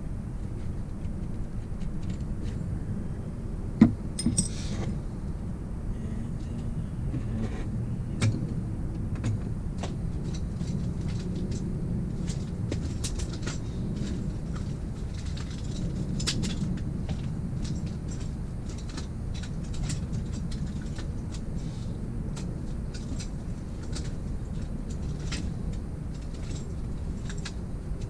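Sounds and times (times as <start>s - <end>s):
metal parts clinking: 4.2s - 4.8s.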